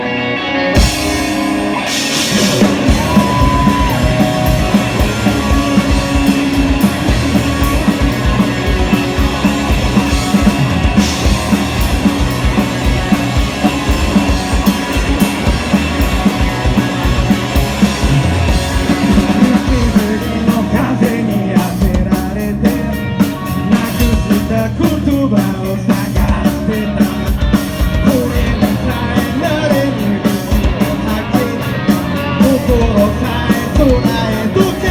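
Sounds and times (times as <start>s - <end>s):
electric guitar: 0.0s - 34.9s
drum kit: 0.7s - 34.9s
person singing: 2.3s - 9.6s, 18.9s - 34.9s.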